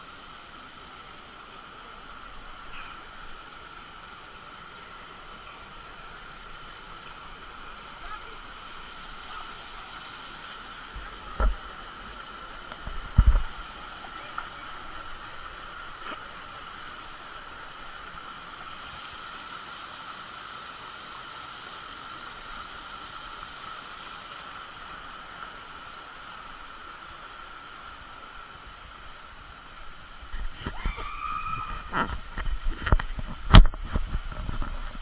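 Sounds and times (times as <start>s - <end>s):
waterfall rushing: 0.0s - 35.0s
voice: 13.8s - 15.2s.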